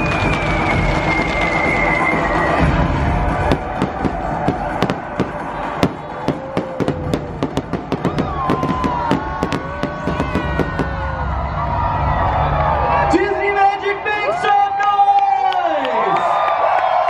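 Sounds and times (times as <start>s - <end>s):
fireworks popping and crackling: 0.0s - 2.6s, 3.3s - 11.1s
loud show music: 0.0s - 14.7s.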